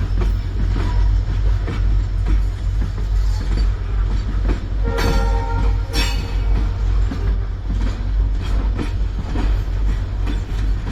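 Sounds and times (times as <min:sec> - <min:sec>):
freight train rumbling: 0:00.0 - 0:10.9
wheels clicking over rail joints: 0:00.0 - 0:10.9
locomotive horn: 0:04.8 - 0:06.4.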